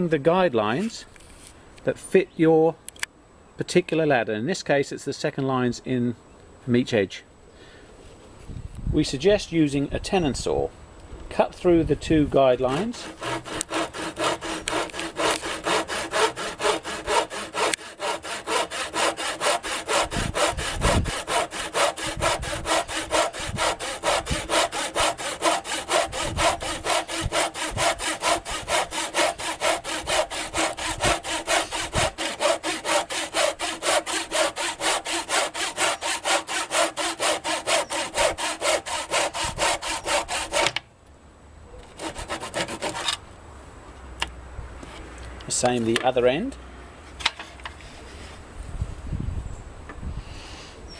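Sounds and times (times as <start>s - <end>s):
saw cutting through rubber: 12.7s - 40.8s, 42.0s - 43.2s.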